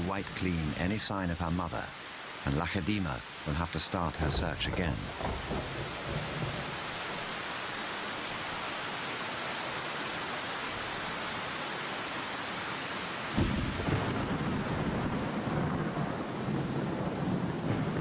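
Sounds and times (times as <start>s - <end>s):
heavy rain falling: 0.0s - 18.0s
thunder rumble: 4.1s - 7.3s, 13.4s - 18.0s.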